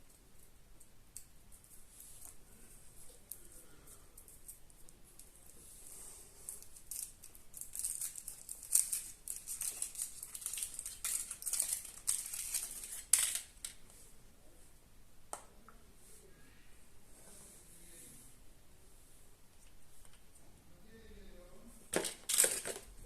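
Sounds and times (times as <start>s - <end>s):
foil wrapper crinkling: 6.7s - 13.6s.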